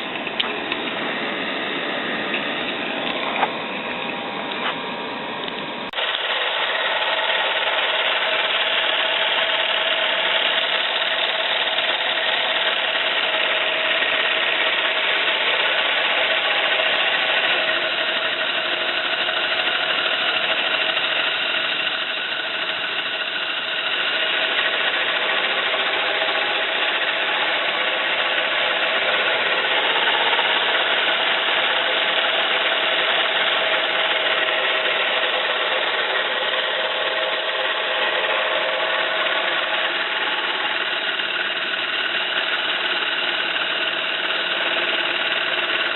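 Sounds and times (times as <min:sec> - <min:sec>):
steam engine model running: 0:00.0 - 0:45.9.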